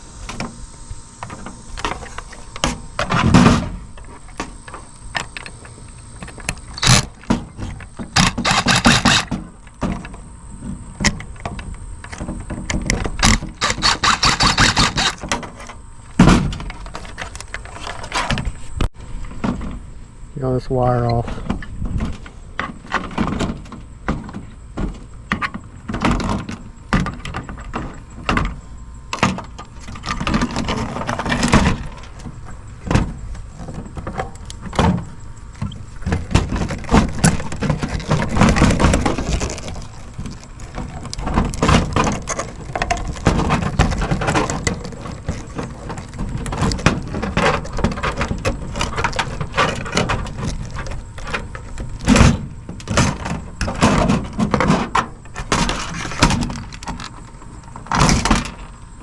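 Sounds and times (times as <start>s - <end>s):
hand tools scraping metal chassis: 12.1s - 18.8s.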